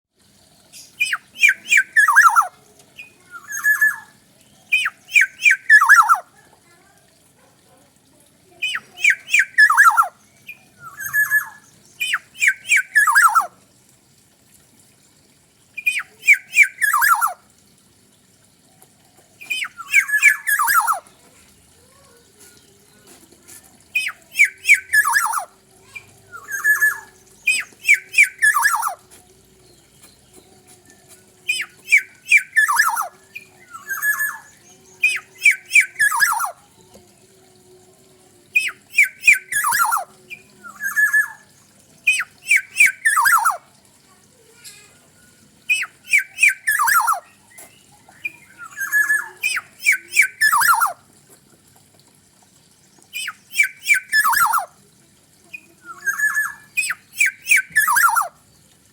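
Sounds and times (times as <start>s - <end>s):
oriole harsh squawking calls: 0.8s - 6.3s, 8.6s - 13.6s, 15.8s - 17.4s, 19.4s - 21.2s, 23.9s - 29.1s, 31.4s - 36.6s, 38.6s - 43.7s, 45.6s - 47.4s, 48.1s - 51.0s, 53.2s - 54.8s, 55.8s - 58.4s.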